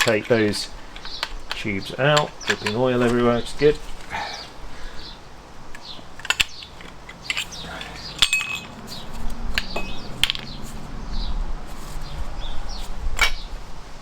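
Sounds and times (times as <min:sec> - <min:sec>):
metal engine parts clinking: 0:00.0 - 0:04.1, 0:05.7 - 0:10.8, 0:13.2 - 0:13.5.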